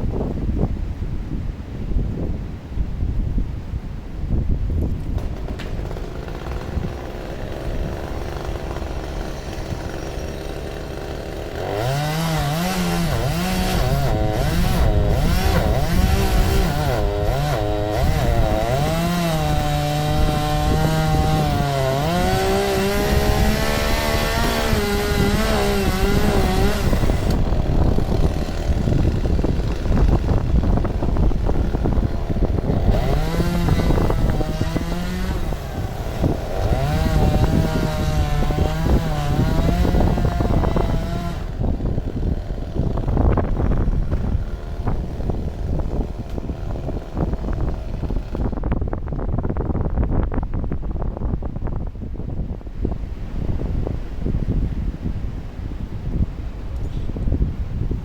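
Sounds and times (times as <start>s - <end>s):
chainsaw cutting wood: 4.8s - 48.9s.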